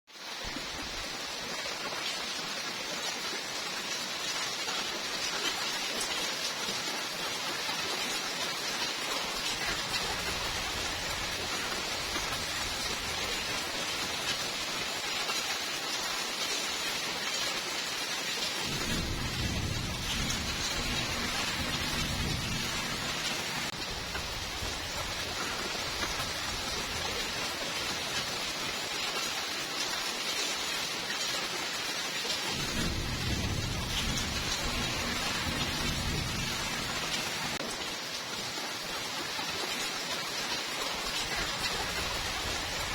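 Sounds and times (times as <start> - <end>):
steady rainfall: 0.1 - 42.9
thunder rumbling: 9.5 - 14.5, 18.6 - 28.4, 32.5 - 37.6, 41.5 - 42.9.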